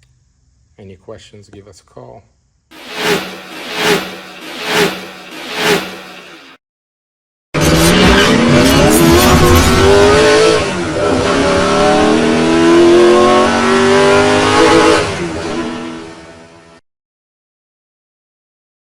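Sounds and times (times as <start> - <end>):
motorcycle engine revving: 2.7 - 6.6, 7.6 - 16.0.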